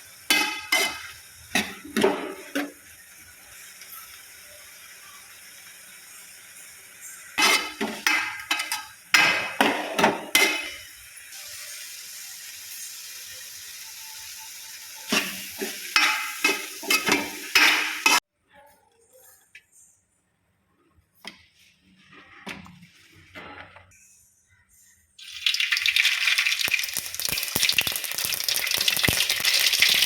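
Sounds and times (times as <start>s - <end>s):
food scraped in steel dishes: 0.3s - 2.7s, 7.4s - 8.9s, 15.1s - 18.2s.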